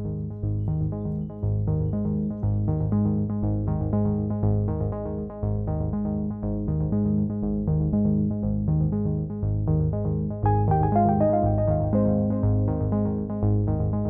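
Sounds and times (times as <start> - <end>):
electronic synthesizer music: 10.5 - 13.9.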